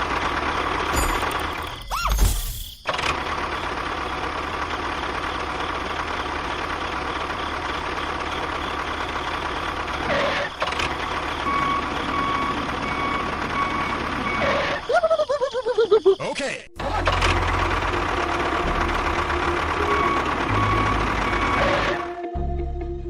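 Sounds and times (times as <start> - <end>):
reversing alarm beeps: 11.4 - 14.9, 19.8 - 22.0
motor rattly drone: 16.8 - 22.2.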